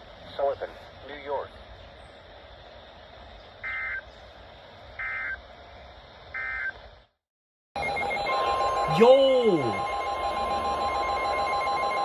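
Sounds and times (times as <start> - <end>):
radio hiss: 0.0 - 1.6.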